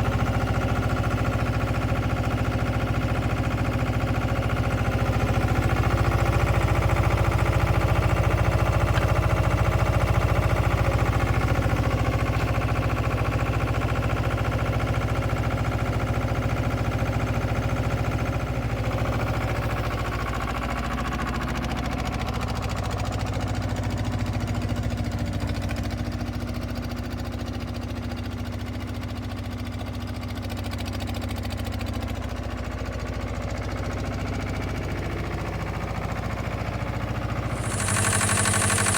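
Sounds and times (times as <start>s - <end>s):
diesel engine idling: 37.5s - 38.9s.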